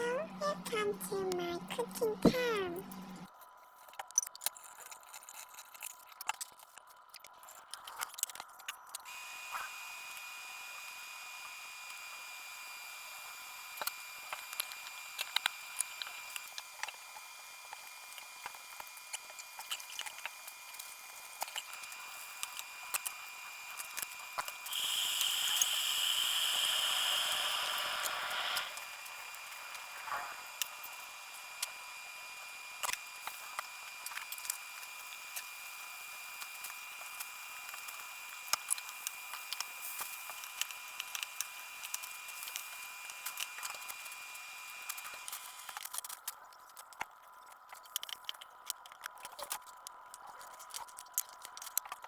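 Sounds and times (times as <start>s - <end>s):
steady hiss: 24.6s - 31.8s
thin steady high tone: 24.6s - 32.5s.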